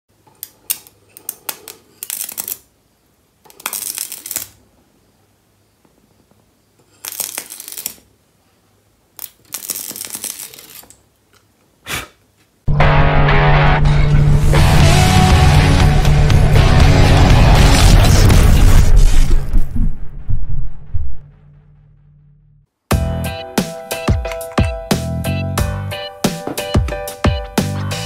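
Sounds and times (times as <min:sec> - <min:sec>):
electric arc crackling and hissing: 0:15.0 - 0:19.8.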